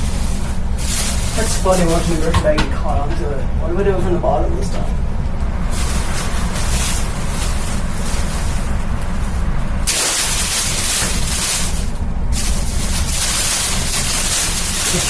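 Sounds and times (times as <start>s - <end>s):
fan low rumble: 0.0s - 15.0s
plastic bag flapping in airflow: 5.6s - 15.0s.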